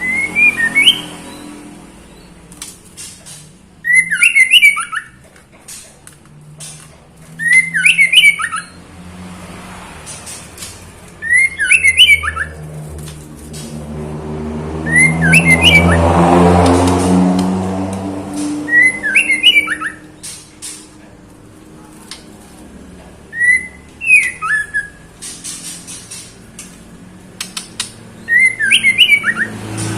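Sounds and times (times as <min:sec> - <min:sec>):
passing vehicle engine: 0:00.0 - 0:29.9
bird harsh call phrases: 0:18.3 - 0:21.0.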